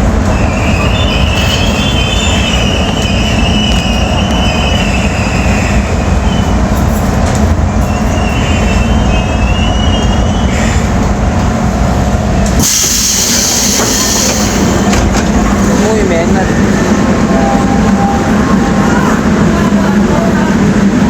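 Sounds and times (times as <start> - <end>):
subway train wheels rumbling: 0.0 - 21.0
high wheel squeal: 0.4 - 6.6
loud hiss: 12.6 - 14.9.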